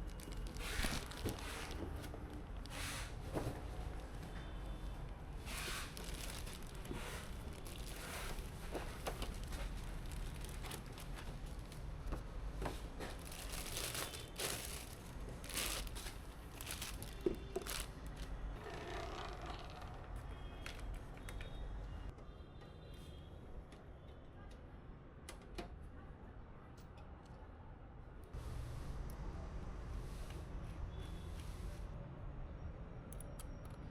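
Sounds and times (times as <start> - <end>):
packaging crinkling and rustling: 0.0 - 20.0.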